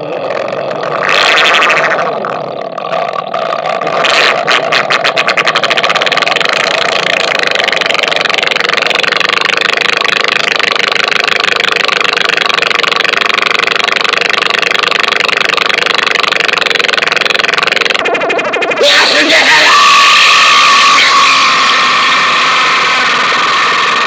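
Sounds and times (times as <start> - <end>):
harsh distorted noise music: 0.0 - 9.9, 16.6 - 24.0.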